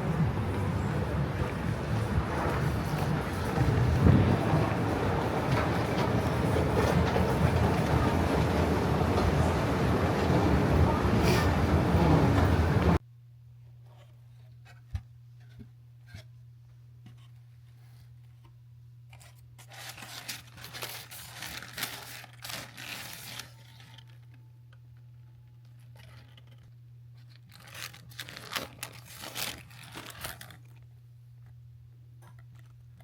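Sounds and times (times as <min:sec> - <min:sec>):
packaging torn and crinkled: 0:19.2 - 0:24.4, 0:25.7 - 0:30.8.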